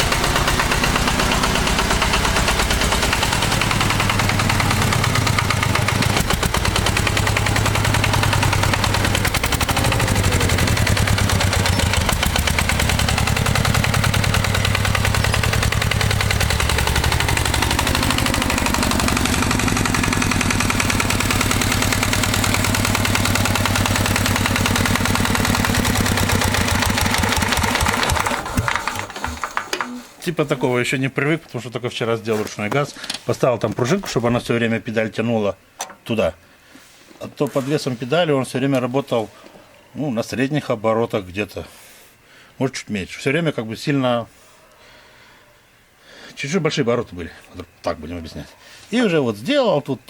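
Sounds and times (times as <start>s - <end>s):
diesel engine clattering: 0.0s - 29.9s.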